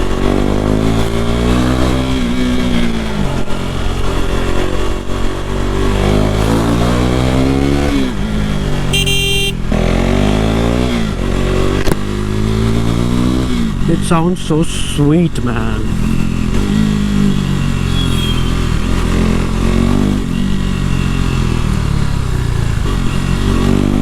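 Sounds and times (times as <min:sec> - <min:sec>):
motorcycle engine revving: 0:00.0 - 0:24.0
brief high-pitched tone: 0:09.0 - 0:09.6, 0:17.7 - 0:18.9.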